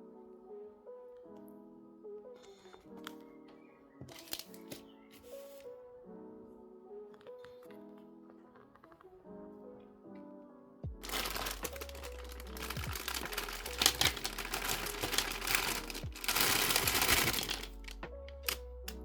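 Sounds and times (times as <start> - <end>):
soft lo-fi piano music: 0.0 - 19.0
packaging rustling and crackling: 4.1 - 5.7, 11.0 - 18.6.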